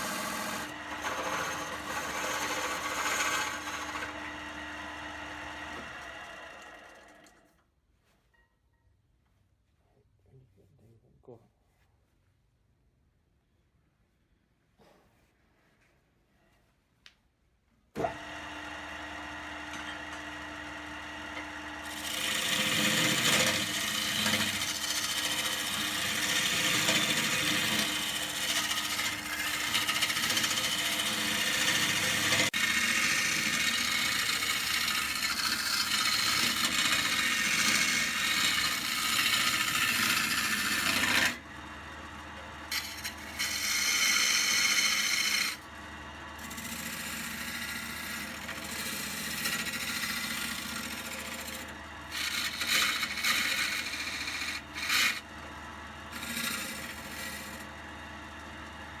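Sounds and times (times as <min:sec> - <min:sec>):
tool scraping spinning wood: 0:00.0 - 0:07.5, 0:21.4 - 0:41.5, 0:42.1 - 0:45.8, 0:46.4 - 0:59.0
wood lathe motor humming: 0:00.0 - 0:07.5, 0:18.0 - 0:59.0.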